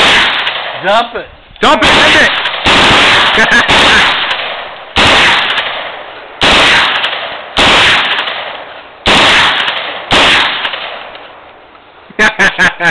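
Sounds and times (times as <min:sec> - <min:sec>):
submachine gun automatic bursts: 0:01.7 - 0:05.8, 0:06.4 - 0:08.5, 0:09.1 - 0:11.0.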